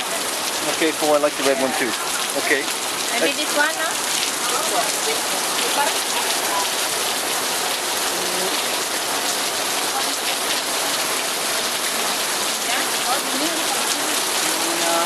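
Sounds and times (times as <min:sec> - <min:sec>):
heavy rain pouring: 0:00.0 - 0:15.0.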